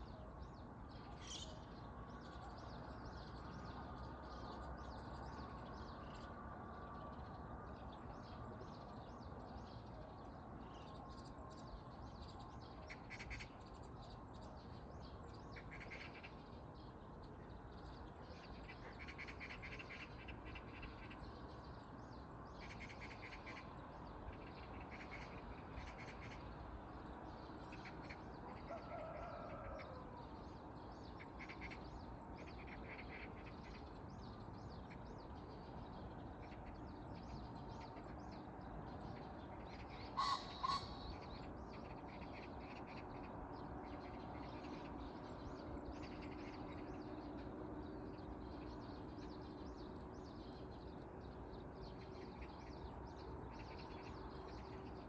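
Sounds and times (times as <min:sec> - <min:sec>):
birds chirping: 0:30.9 - 0:55.0
low bird call: 0:40.2 - 0:41.2.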